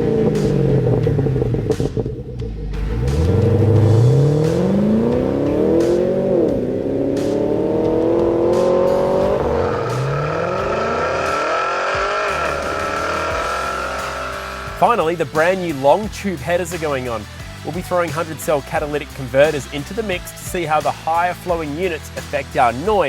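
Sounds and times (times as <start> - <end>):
car engine accelerating hard: 0.0 - 15.8.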